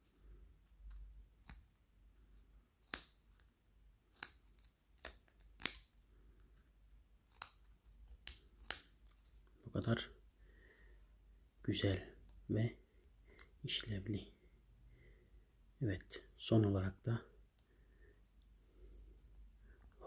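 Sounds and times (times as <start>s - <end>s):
small scissors snipping: 2.8s - 3.4s, 4.1s - 5.9s, 7.3s - 9.1s.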